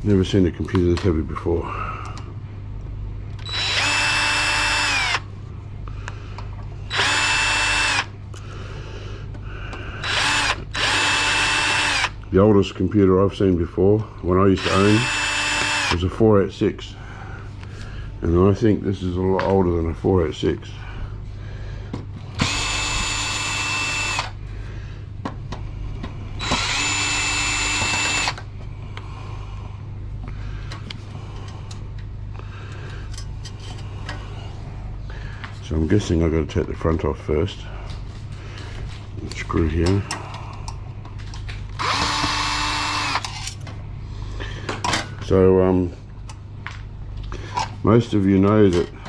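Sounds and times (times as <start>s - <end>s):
power drill whining: 3.4s - 5.2s, 6.9s - 8.1s, 10.0s - 12.2s, 14.6s - 16.0s, 22.3s - 24.4s, 26.4s - 28.4s, 41.8s - 43.5s.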